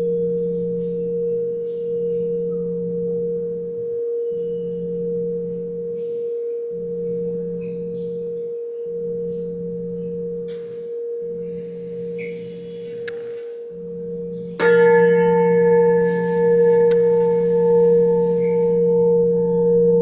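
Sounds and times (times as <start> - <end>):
metal pipe ringing: 0.0 - 20.0.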